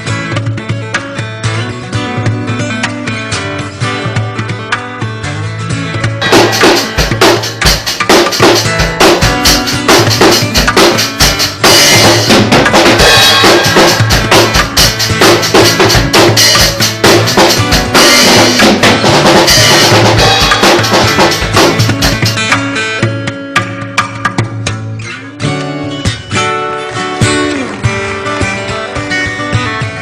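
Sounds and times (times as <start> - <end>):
drum kit fast beat: 6.2 - 24.5
bass line: 10.4 - 22.5.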